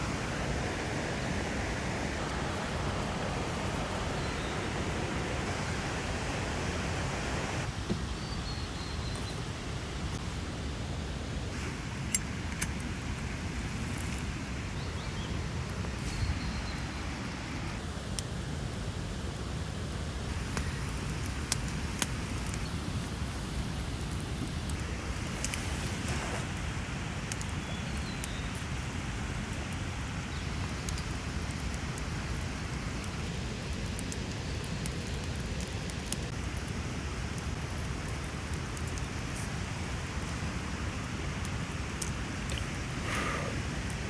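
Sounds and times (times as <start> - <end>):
steady rushing noise: 0.0 - 8.2
campfire crackling and popping: 2.2 - 6.0, 7.6 - 44.0.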